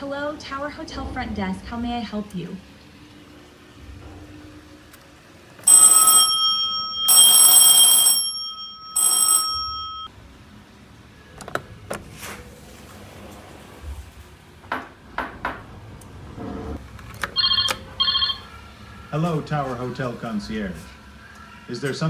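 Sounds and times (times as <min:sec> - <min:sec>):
telephone bell ringing: 0:05.6 - 0:10.1, 0:17.4 - 0:18.5.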